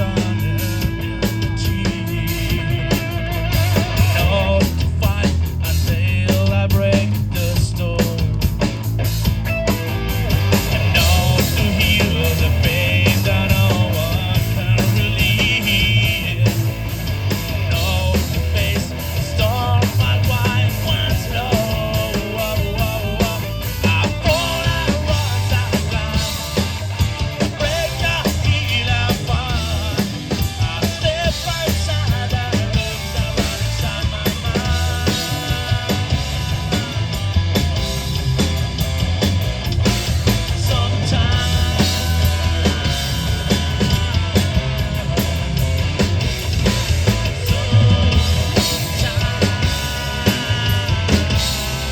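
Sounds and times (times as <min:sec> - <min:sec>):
bass guitar: 0:00.0 - 0:51.9
drum kit: 0:00.0 - 0:51.9
electric guitars: 0:00.0 - 0:51.9
person singing: 0:10.7 - 0:16.8, 0:17.6 - 0:37.2, 0:40.4 - 0:45.0, 0:47.4 - 0:51.9.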